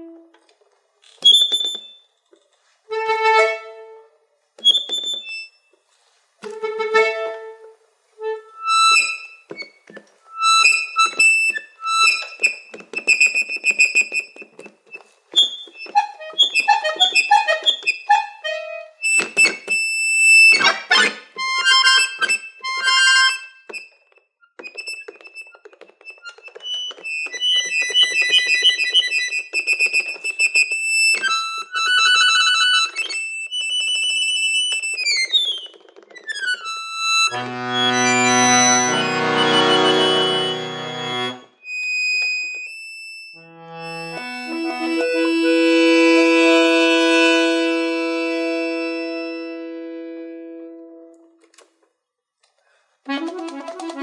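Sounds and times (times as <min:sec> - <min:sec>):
solo harmonica playing: 0:06.5 - 0:14.5, 0:15.4 - 0:23.8, 0:36.4 - 0:51.2.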